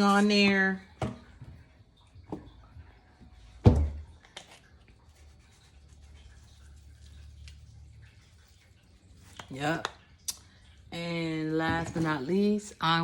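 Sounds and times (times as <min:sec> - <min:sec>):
low steady hum: 0:00.0 - 0:13.0
container set down on counter: 0:03.6 - 0:04.6.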